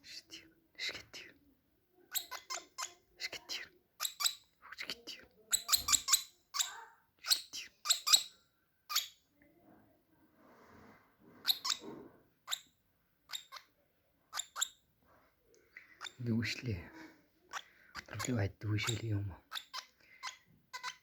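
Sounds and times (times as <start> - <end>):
small bird chirping: 2.0 - 9.3, 11.4 - 14.9, 15.5 - 21.0.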